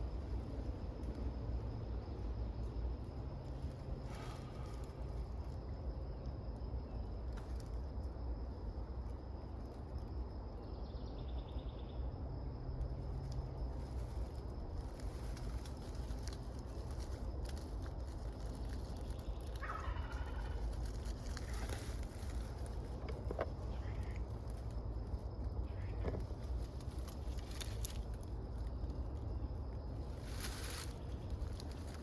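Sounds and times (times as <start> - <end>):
faint high insect drone: 0.0 - 32.0
steady low rumble: 0.0 - 32.0.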